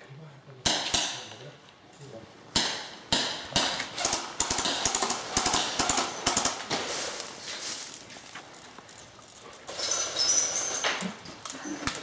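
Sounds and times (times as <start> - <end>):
airsoft gunshots: 2.5 - 7.0.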